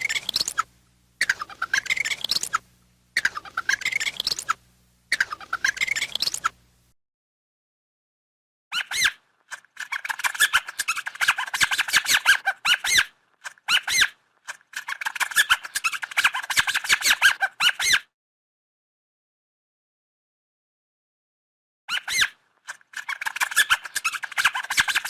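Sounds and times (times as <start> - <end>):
small rodent squeaking: 0.0 - 6.6, 8.7 - 18.1, 21.9 - 25.0.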